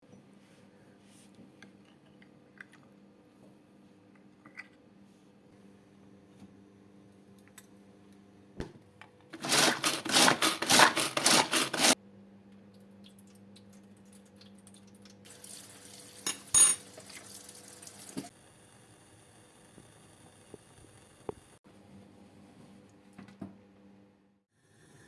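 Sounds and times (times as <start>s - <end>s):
utensils rattling: 9.4s - 12.0s
dishes clinking: 16.2s - 16.9s.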